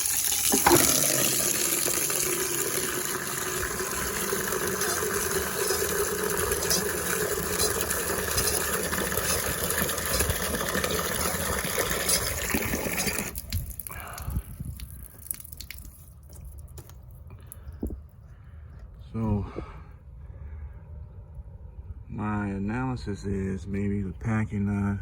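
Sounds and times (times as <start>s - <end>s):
water gushing from hose spigot: 0.0s - 16.5s.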